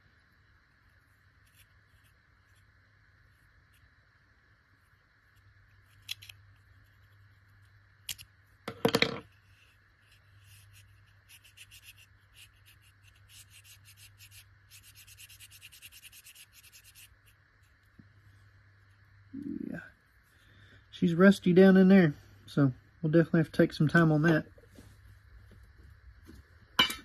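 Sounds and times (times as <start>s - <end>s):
quick rubbing strokes: 9.5s - 17.4s.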